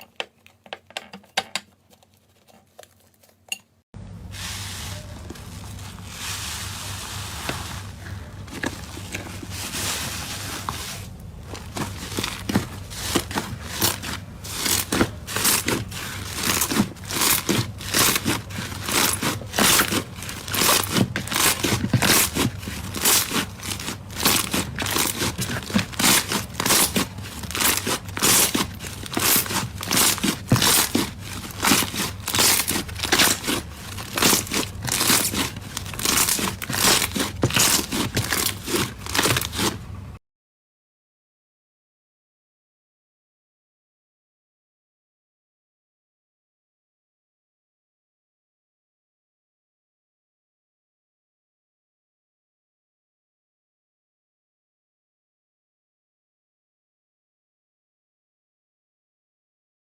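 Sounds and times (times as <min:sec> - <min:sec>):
slime crackling and popping: 0:14.5 - 0:39.8.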